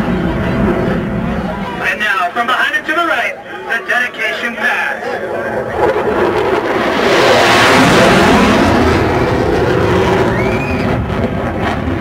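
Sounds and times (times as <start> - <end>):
aircraft engine passing by: 0.0 - 3.8, 4.6 - 12.0.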